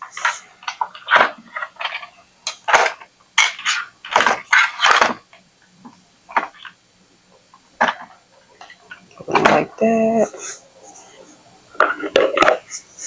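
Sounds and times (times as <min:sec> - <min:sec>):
plastic clicks and clattering: 0:00.1 - 0:06.8, 0:07.4 - 0:09.6, 0:11.8 - 0:12.8.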